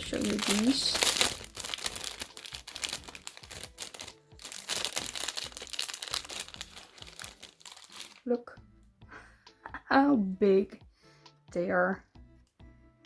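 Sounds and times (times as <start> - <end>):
packaging crinkling and rustling: 0.0 - 8.3.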